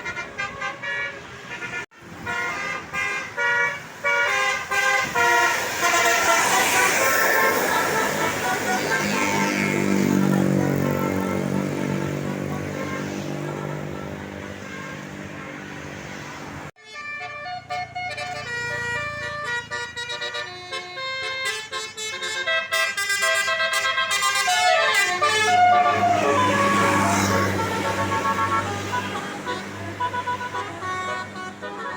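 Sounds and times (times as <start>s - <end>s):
musical air horn playing a tune: 0.0s - 15.3s, 16.8s - 31.9s
musical air horn chord: 16.8s - 31.9s.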